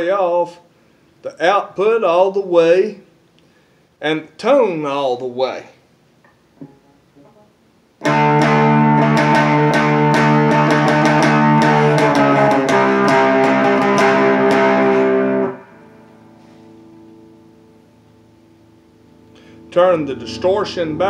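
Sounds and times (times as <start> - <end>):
faint amp hum: 0.0 - 21.0
electric guitar strummed chords: 6.6 - 21.0.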